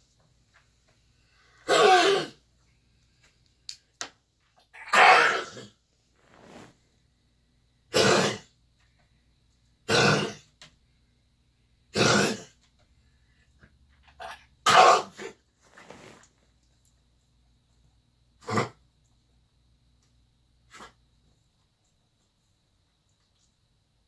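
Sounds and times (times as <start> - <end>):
dog coughing: 1.6 - 2.4, 4.7 - 5.7, 7.9 - 8.5, 9.9 - 10.5, 11.9 - 12.5, 14.2 - 15.4, 18.4 - 18.8.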